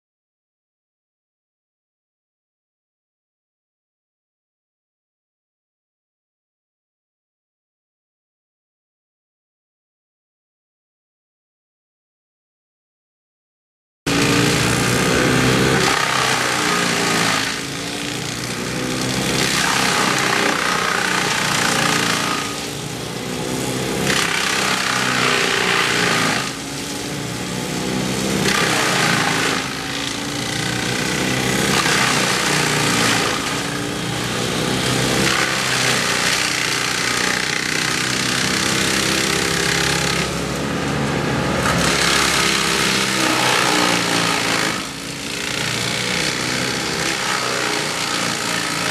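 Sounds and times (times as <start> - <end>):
chainsaw revving and cutting: 14.1 - 48.9.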